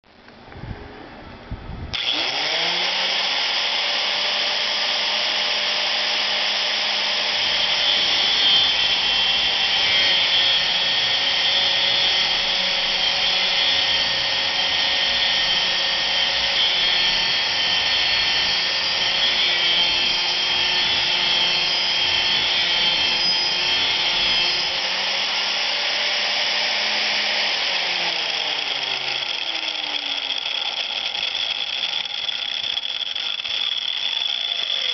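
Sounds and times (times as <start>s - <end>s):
angle grinder motor whine: 1.9s - 34.9s
disc grinding steel pipe: 4.4s - 34.9s.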